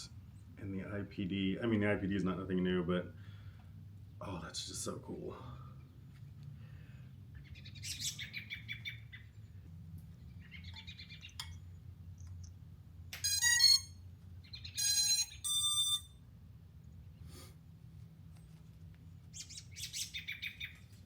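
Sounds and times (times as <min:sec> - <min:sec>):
small birds chirping: 0:03.6 - 0:16.0, 0:18.4 - 0:21.0
loud electronic beeps: 0:13.2 - 0:14.0, 0:14.7 - 0:16.2.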